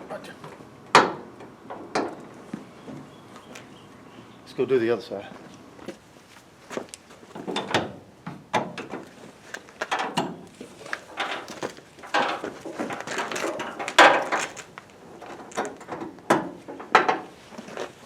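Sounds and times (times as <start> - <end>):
tools knocking and scraping: 7.4 - 18.0.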